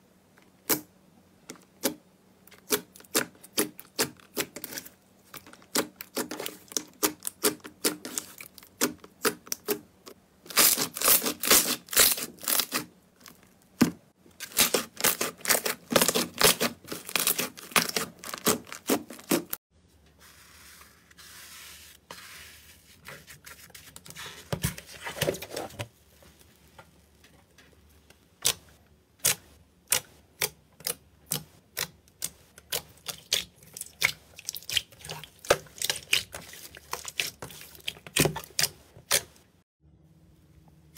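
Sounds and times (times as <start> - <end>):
slime squishing: 1.8 - 9.9, 14.4 - 19.6, 20.3 - 39.4.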